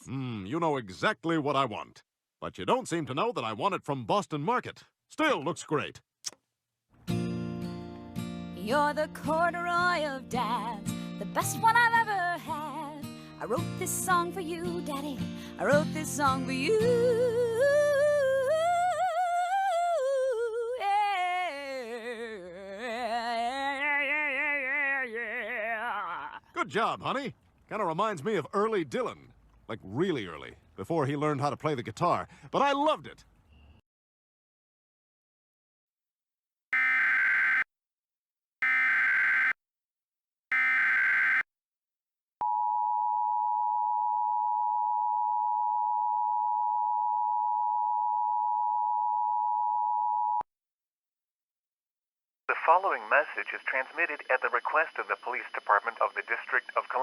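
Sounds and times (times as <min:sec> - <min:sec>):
girl singing: 0:08.6 - 0:26.2
digital data tone bursts: 0:36.8 - 0:37.6, 0:38.6 - 0:39.6, 0:40.5 - 0:41.4
two-tone attention signal: 0:36.8 - 0:37.6, 0:38.6 - 0:39.6, 0:40.5 - 0:41.4.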